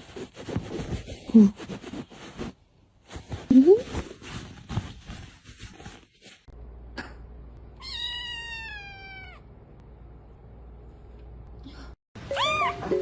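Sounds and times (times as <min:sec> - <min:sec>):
cat meowing: 0:07.8 - 0:09.4.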